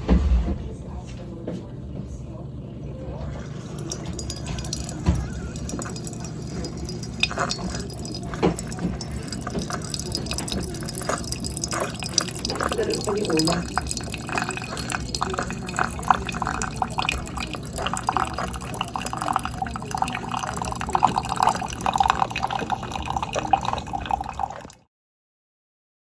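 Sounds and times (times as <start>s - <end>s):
coffee maker humming: 0.0s - 24.8s
coffee streaming into cup: 3.0s - 24.8s.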